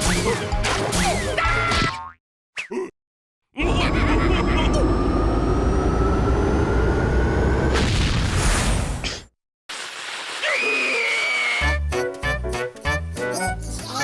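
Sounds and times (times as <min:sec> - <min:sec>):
cartoon rumbling boom with whine: 0:03.6 - 0:09.1.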